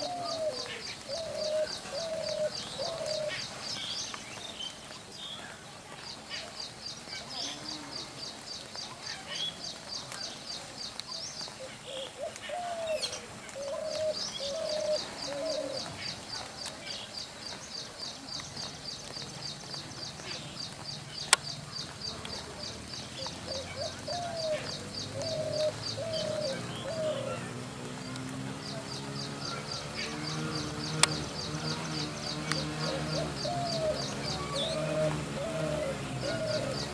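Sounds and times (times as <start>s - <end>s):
dove cooing: 0.0s - 3.9s, 11.6s - 16.6s, 19.7s - 36.9s.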